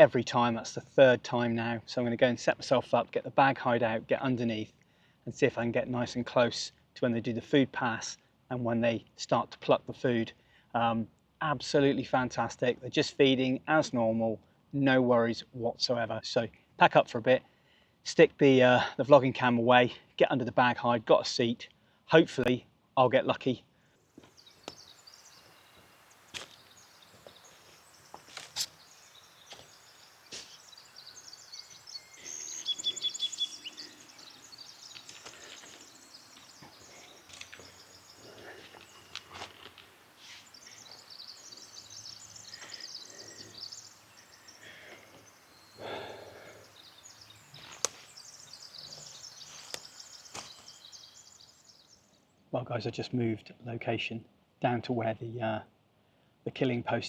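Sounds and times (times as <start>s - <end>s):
small birds calling: 24.1s - 52.3s.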